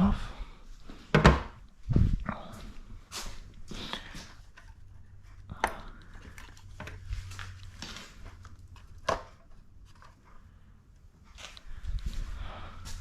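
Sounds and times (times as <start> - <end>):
clicks and rattles of tools: 3.9 - 10.2.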